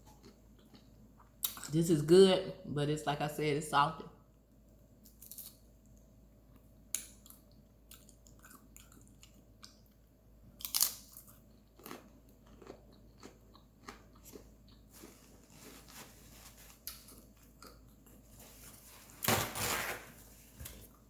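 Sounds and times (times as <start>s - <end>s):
person chewing food: 0.0s - 1.7s, 5.0s - 18.4s.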